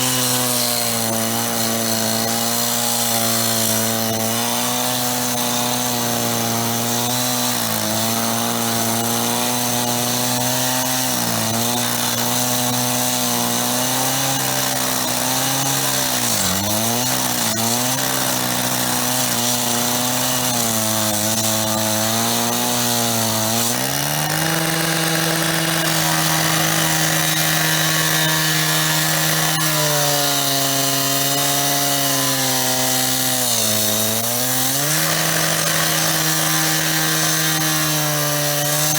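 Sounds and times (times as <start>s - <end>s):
power saw cutting metal: 0.0s - 38.9s.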